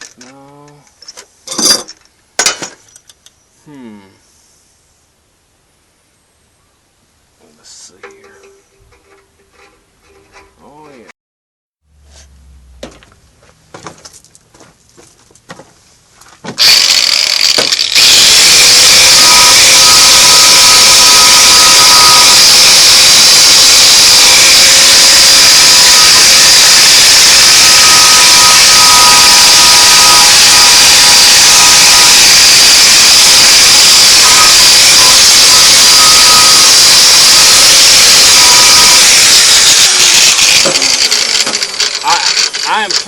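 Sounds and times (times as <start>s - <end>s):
power tool grinding metal: 16.6s - 43.0s.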